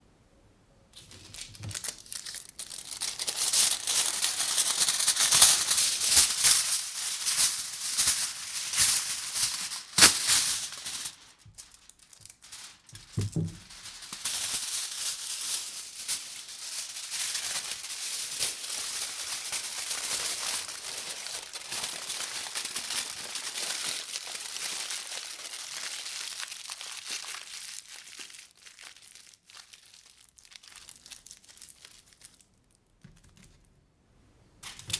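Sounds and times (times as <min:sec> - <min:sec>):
foil crinkling: 0:01.0 - 0:33.6
soft thump: 0:13.2 - 0:13.7.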